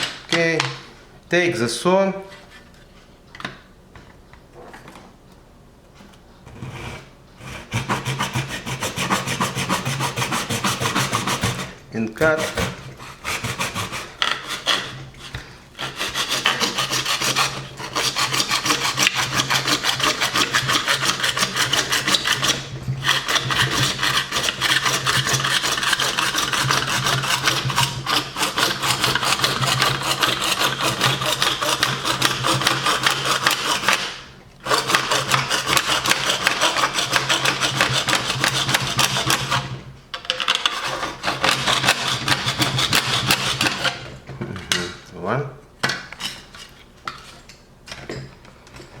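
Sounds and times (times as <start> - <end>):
hand saw cutting: 6.5 - 39.8, 40.4 - 44.2.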